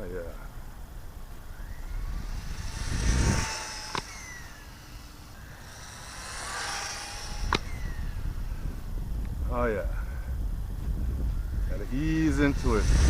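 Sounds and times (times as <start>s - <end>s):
rc car motor whine: 0.5s - 13.0s
sharp click: 7.5s - 7.7s.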